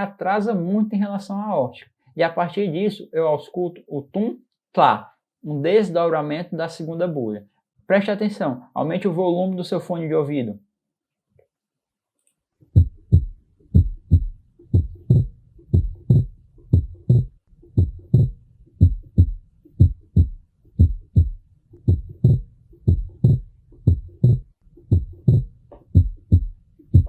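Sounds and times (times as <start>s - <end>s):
heartbeat through stethoscope: 12.7s - 27.0s.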